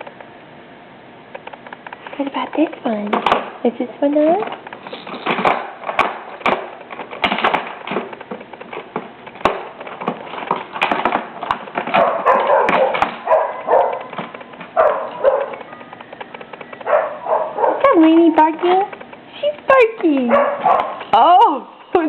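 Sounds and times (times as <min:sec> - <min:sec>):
plastic toys clicking and knocking: 0:01.4 - 0:16.9
dog barking: 0:11.9 - 0:15.8, 0:16.8 - 0:18.0, 0:20.3 - 0:21.1.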